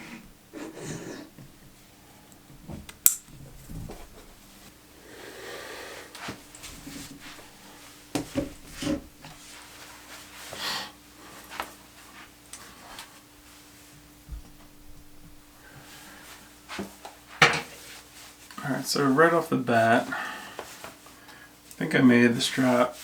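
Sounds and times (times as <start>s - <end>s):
faint steady hum: 0.0s - 23.0s
fabric rustling: 6.2s - 10.4s.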